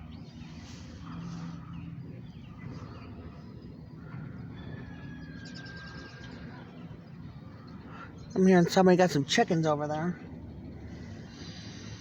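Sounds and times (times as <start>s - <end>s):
low background rumble: 0.0s - 12.0s
distant rooster crowing: 4.1s - 6.5s.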